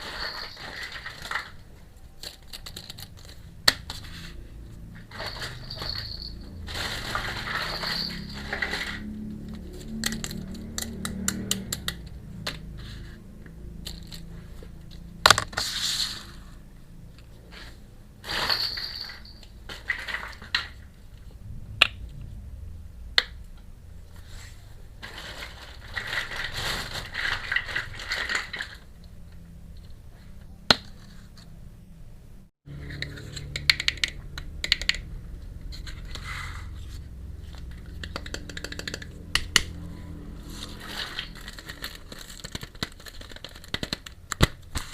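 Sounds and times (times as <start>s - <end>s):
small metal parts clicking: 0.0s - 3.5s, 5.1s - 12.6s, 13.8s - 15.4s
packaging rustling: 40.8s - 44.9s.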